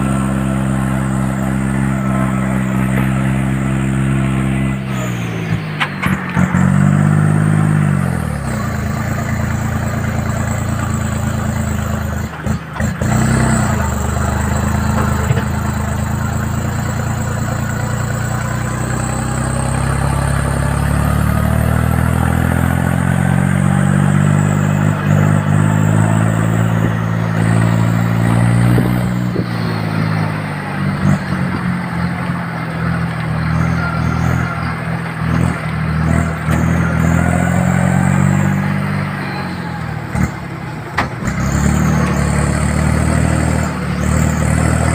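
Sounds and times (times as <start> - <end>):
tractor engine running: 0.0 - 44.9.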